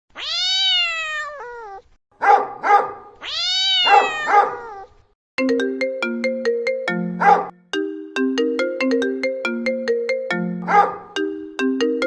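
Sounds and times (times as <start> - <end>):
cat meowing: 0.1 - 2.0, 3.2 - 5.1
phone ringtone melody: 5.4 - 12.0.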